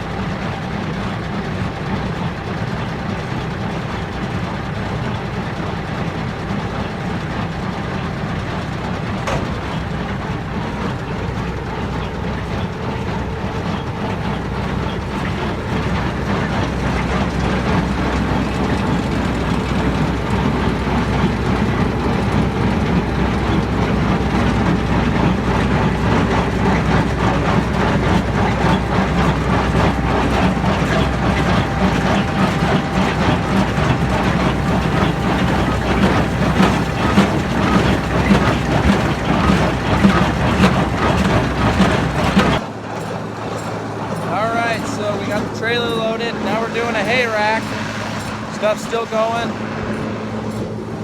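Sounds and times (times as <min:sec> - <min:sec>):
tractor engine: 0:00.0 - 0:51.0
baler rhythmic clatter: 0:11.0 - 0:51.0.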